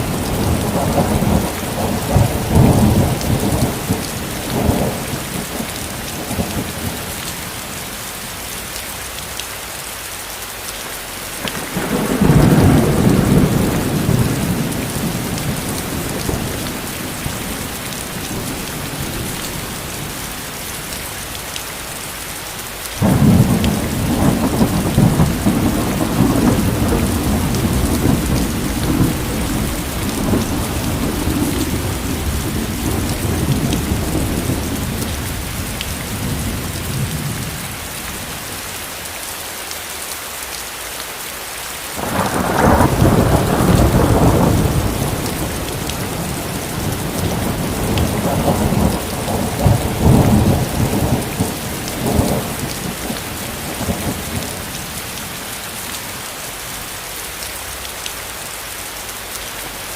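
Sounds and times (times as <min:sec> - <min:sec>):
rolling thunder: 0:00.0 - 0:07.2, 0:11.4 - 0:20.4, 0:23.0 - 0:38.2, 0:42.0 - 0:55.4
heavy rain: 0:00.0 - 0:59.9.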